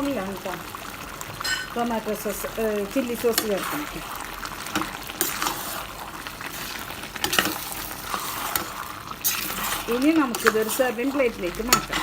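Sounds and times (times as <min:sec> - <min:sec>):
light sizzle in a pan: 0:00.0 - 0:12.0
spoon scraping and clicking on pan: 0:04.7 - 0:05.9, 0:06.5 - 0:12.0.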